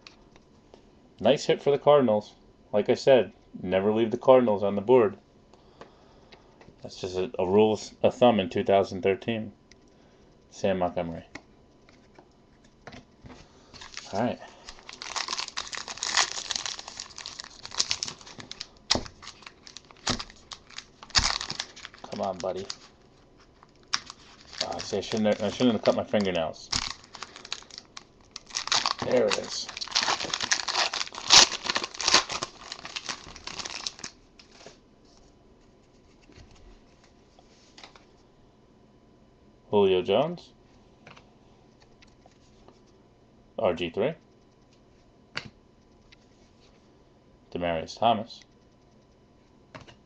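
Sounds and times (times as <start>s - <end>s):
plastic wrapping crinkling: 13.6s - 34.8s.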